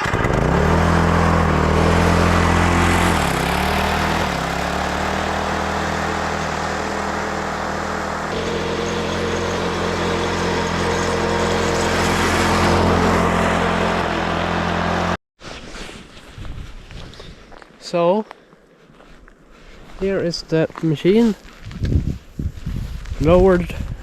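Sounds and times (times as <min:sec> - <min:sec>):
lawn tractor engine running: 0:00.0 - 0:15.2.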